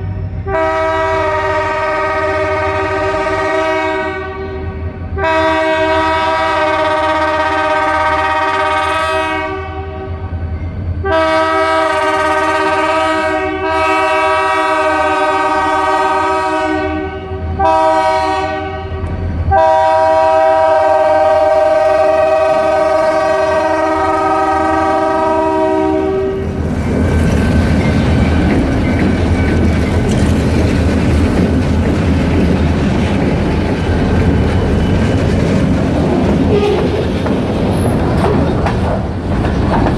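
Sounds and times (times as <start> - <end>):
train wheels on rails: 0.0 - 39.9
locomotive air horn blasts: 0.4 - 10.2, 11.0 - 26.5, 36.5 - 37.0.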